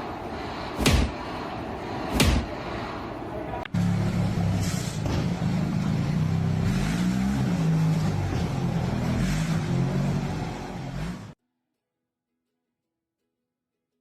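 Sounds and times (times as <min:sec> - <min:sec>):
engine revving: 0:03.7 - 0:11.4.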